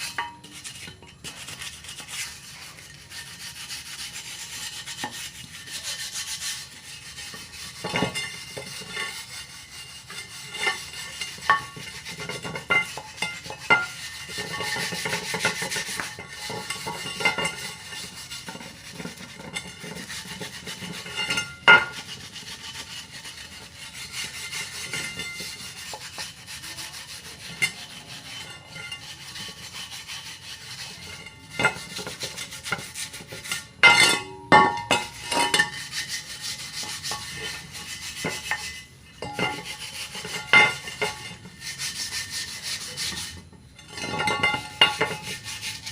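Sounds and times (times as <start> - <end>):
tool clinking on metal rim: 0.0 - 1.3, 10.5 - 22.0, 31.1 - 35.8, 36.9 - 41.4, 43.8 - 45.3
scraping paint off metal rim: 0.0 - 45.9.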